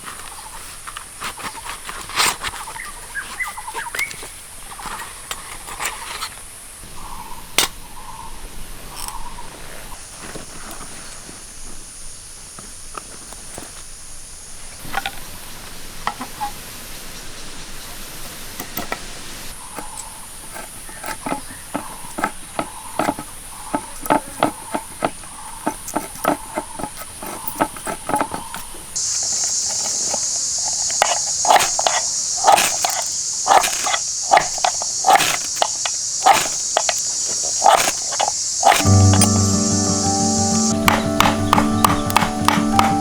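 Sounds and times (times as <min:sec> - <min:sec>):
high insect drone: 0:29.0 - 0:43.0
sharp knocks on firewood: 0:40.7 - 0:43.0.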